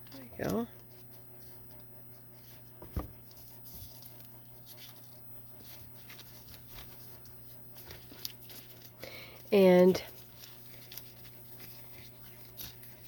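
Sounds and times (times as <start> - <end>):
rustles and ticks of handling: 0.0 - 13.0
soft knock: 2.8 - 3.2.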